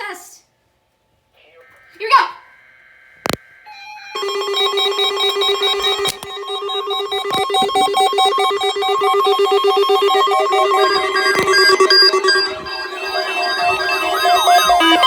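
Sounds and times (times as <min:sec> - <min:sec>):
weather radio alarm pulsing tone: 0:03.7 - 0:15.0.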